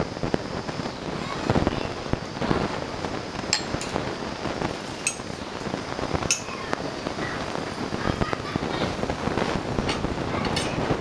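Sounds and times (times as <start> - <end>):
steady background noise: 0.0 - 11.0
tableware clinking: 3.5 - 4.0, 4.9 - 5.4, 6.3 - 6.5, 9.9 - 10.8.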